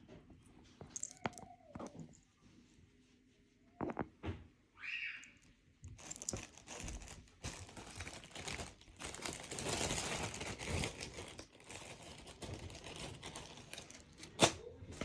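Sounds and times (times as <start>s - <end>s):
necklaces crinkling and rustling: 0.8s - 2.3s, 5.9s - 15.0s.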